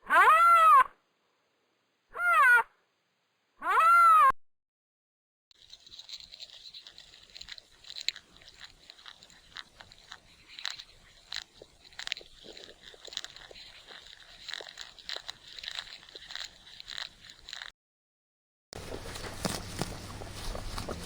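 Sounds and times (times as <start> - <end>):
animal chewing and crunching: 5.5 - 17.7, 18.8 - 21.0.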